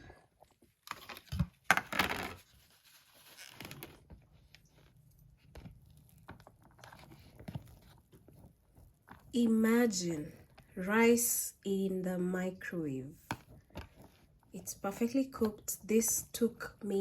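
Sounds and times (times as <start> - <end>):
light scraping and small knocks: 0.4 - 10.8.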